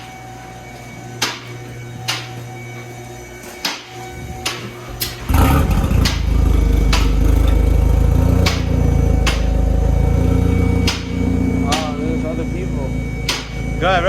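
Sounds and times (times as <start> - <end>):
car engine starting and idling: 4.9 - 14.0
sharp knocks: 5.9 - 11.9, 13.2 - 13.6.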